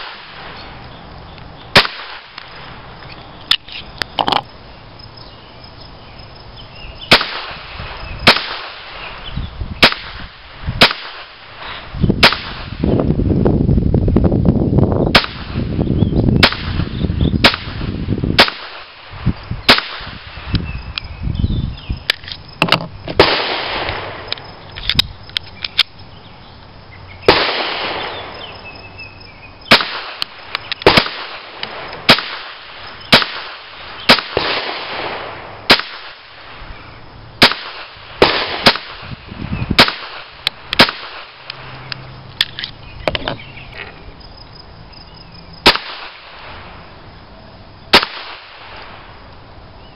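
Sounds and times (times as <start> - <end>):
pistol shots: 1.7 - 2.4, 7.1 - 7.6, 8.2 - 9.0, 9.8 - 11.4, 12.2 - 12.7, 15.1 - 15.5, 16.4 - 16.8, 17.4 - 18.9, 19.7 - 20.2, 23.2 - 24.3, 27.3 - 28.4, 29.7 - 36.3, 37.4 - 39.1, 39.8 - 41.4, 45.6 - 46.4, 47.9 - 48.9.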